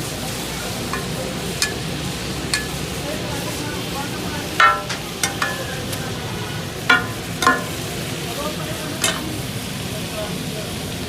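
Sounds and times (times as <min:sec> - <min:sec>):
food sizzling: 0:00.0 - 0:11.0
metal spatulas clanging on griddle: 0:00.9 - 0:06.2, 0:06.8 - 0:08.1, 0:09.0 - 0:09.5.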